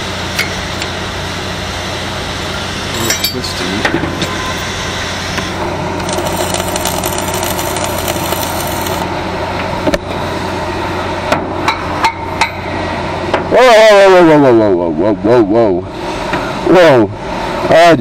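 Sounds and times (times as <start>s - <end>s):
machine hum: 5.4s - 9.2s.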